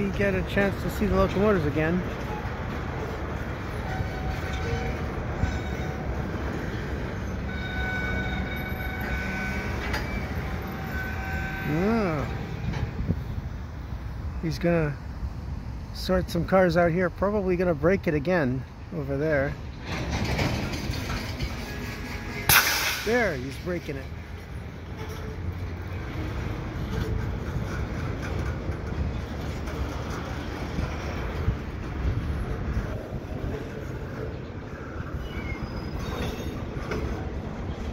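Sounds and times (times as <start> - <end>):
wheels squealing: 0.0 - 13.4, 19.0 - 37.9
freight train rumbling: 0.0 - 37.9
thin wheel squeal: 3.7 - 12.5, 34.8 - 37.2.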